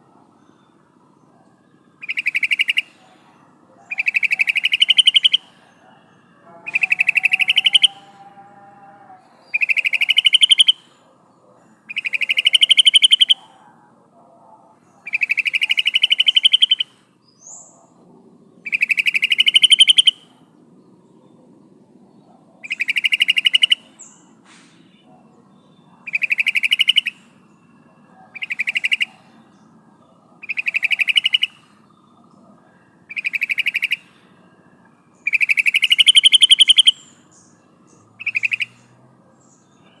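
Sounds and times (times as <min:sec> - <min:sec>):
bulbul bubbling chatter call: 0:02.0 - 0:08.2, 0:09.4 - 0:18.0, 0:18.6 - 0:20.4, 0:22.6 - 0:24.1, 0:24.8 - 0:34.2, 0:35.2 - 0:38.8.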